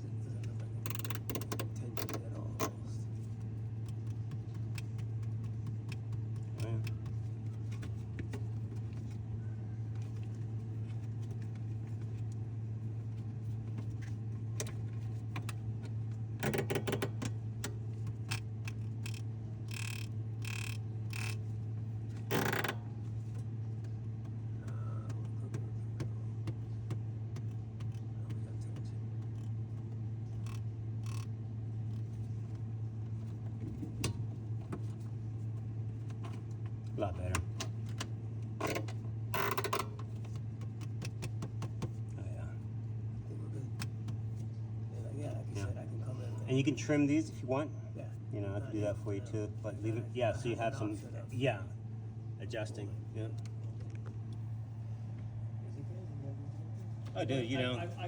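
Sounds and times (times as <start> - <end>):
refrigerator humming: 0.0 - 58.0
sharp clicks and knocks: 0.9 - 2.8, 14.6 - 21.4.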